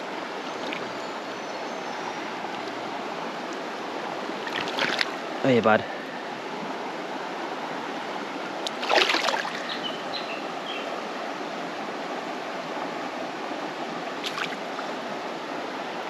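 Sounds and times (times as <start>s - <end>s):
creek water flowing: 0.0s - 16.0s.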